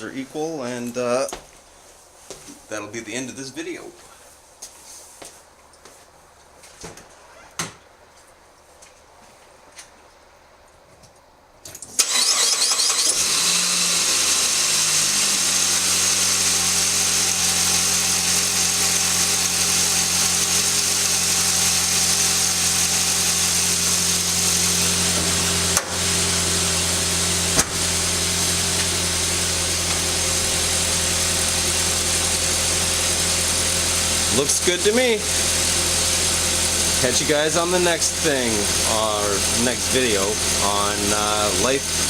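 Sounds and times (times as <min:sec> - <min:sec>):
car engine starting and idling: 0:12.0 - 0:42.0.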